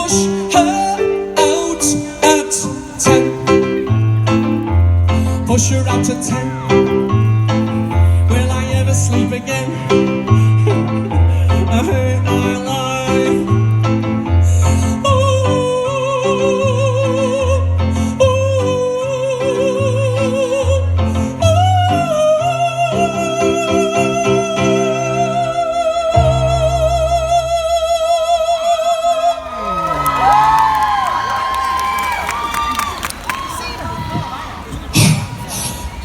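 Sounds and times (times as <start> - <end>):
crowd cheering and whistling: 29.2 - 36.0.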